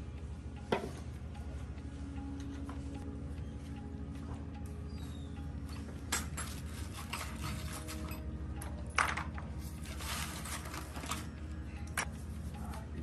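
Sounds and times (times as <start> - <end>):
steady low hum: 0.0 - 13.0
metal tools clinking and scraping: 6.1 - 12.1.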